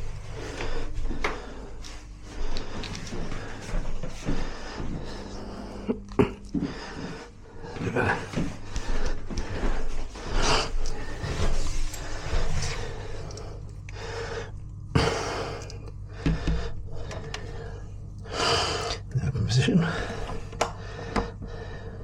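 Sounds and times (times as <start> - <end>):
close breathing: 0.2 - 19.0, 19.6 - 22.0.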